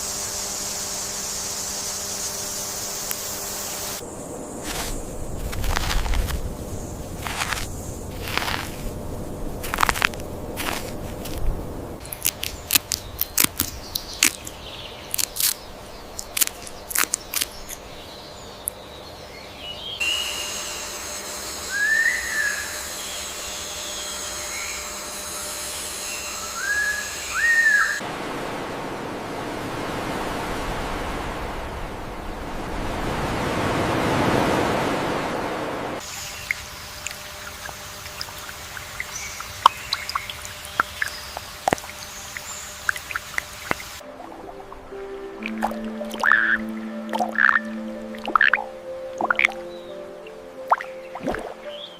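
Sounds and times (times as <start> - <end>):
sharp clicks and crackles: 16.2 - 17.8
steady high whine: 20.0 - 51.7
bird chirps: 26.1 - 28.0, 38.2 - 43.8, 44.4 - 51.9
rush of noise: 28.0 - 36.2.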